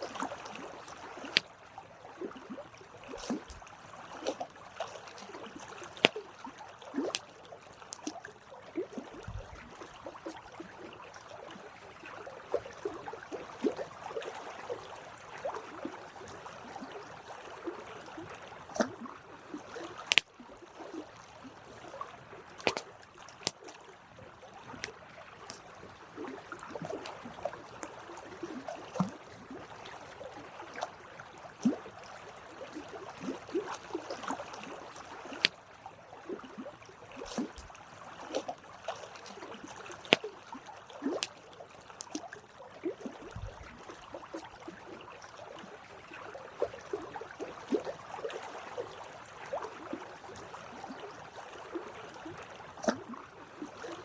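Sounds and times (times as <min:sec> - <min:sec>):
fire pops and snaps: 0:03.2 - 0:03.6, 0:20.0 - 0:20.3, 0:22.6 - 0:22.8, 0:37.3 - 0:37.7
wood crackling in campfire: 0:20.0 - 0:20.2, 0:37.3 - 0:37.7.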